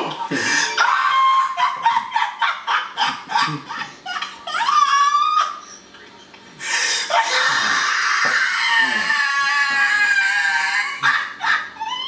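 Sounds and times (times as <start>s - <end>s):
hard laughter: 0.0s - 5.6s, 7.1s - 12.0s
high-pitched vocal squeal: 7.1s - 12.0s.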